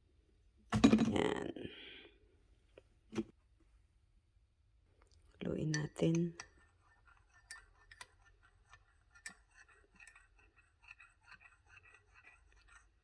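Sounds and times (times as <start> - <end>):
spoon clinking in a cup: 5.6 - 13.0.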